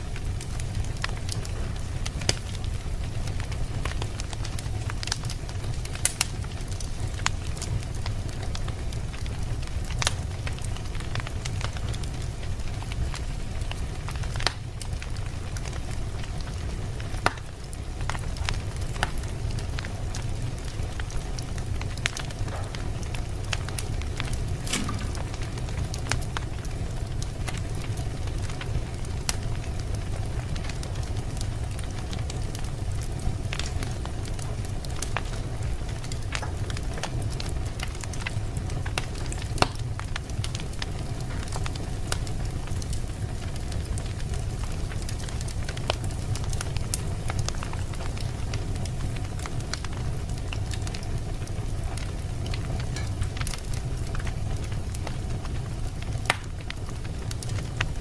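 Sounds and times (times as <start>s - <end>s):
fire crackling and popping: 0.0s - 58.0s
low rumble of flames: 0.0s - 58.0s.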